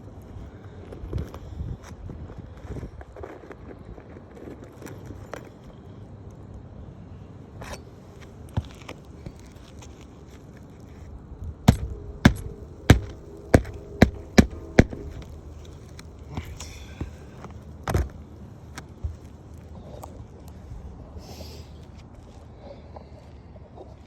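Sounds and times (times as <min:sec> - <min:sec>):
hammer striking nail: 0:11.7 - 0:15.4
scuffing: 0:11.7 - 0:15.4.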